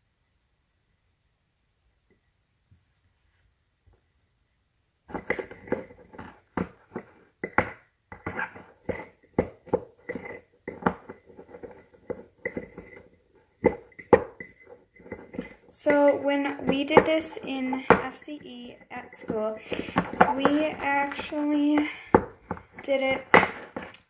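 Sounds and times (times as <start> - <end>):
fork scraping glass cup: 10.1 - 10.8.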